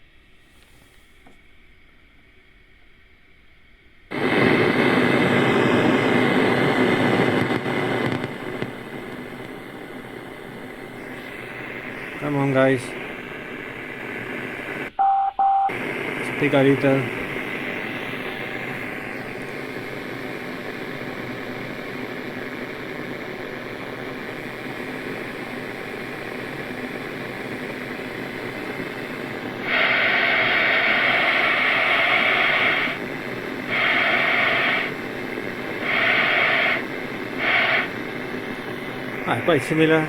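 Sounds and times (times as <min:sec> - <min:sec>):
radio receiver hiss: 0:00.0 - 0:01.6, 0:04.1 - 0:40.0
harsh static bursts: 0:04.1 - 0:40.0.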